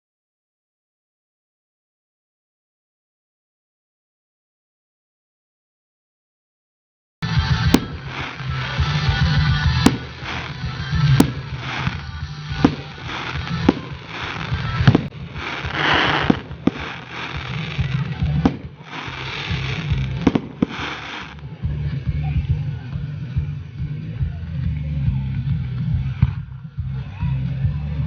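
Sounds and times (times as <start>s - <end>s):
fireworks bangs: 7.2s - 21.5s
fireworks crackling: 7.2s - 21.7s
music with steady bass: 7.2s - 28.0s.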